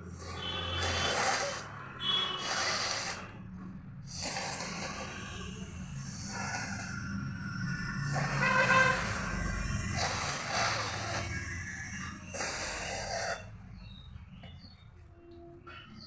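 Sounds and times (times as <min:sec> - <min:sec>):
person blowing nose: 0:00.2 - 0:03.3.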